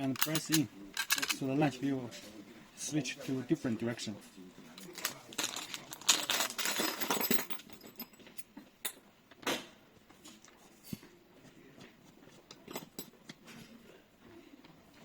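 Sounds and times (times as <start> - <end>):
metal lock scraping rattle: 0.0 - 1.4
metal lock clicks and scrapes: 0.2 - 1.4.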